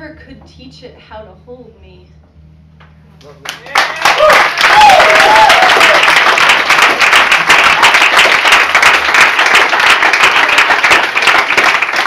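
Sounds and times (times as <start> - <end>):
audience applauding and cheering: 3.4 - 12.0.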